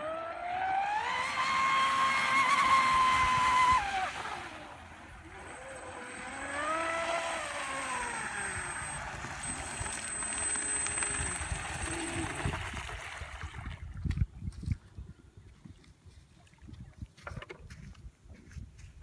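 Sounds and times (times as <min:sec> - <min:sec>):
rc boat motor high whine: 0:00.0 - 0:13.3
quieter passing motor whine: 0:00.0 - 0:13.9.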